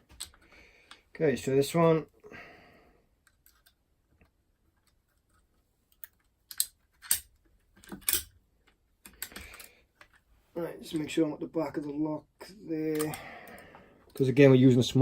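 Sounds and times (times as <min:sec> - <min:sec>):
lock-picking tools clicking in lock: 0:05.9 - 0:08.4, 0:12.9 - 0:13.2.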